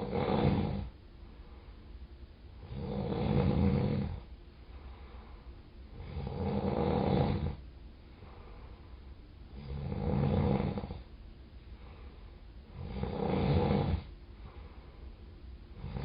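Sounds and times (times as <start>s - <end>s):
rattling snoring: 0.0s - 0.9s, 2.6s - 4.2s, 6.0s - 7.6s, 9.6s - 11.0s, 12.7s - 14.1s, 15.8s - 16.0s.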